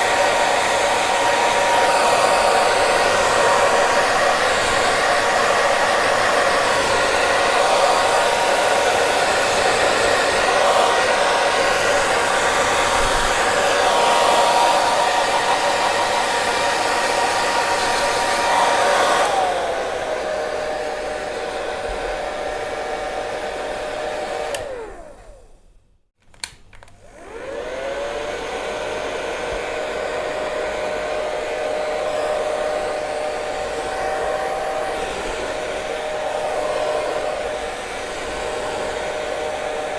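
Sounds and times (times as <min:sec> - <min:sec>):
hair dryer blowing: 0:00.0 - 0:25.8, 0:26.9 - 0:39.9
hair dryer switch click: 0:24.4 - 0:24.8, 0:26.3 - 0:27.0.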